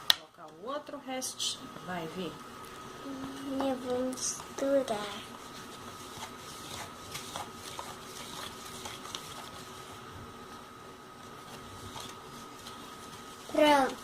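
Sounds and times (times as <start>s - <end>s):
faint hum: 0.0s - 14.0s
spoon stirring dough in bowl: 5.3s - 10.0s.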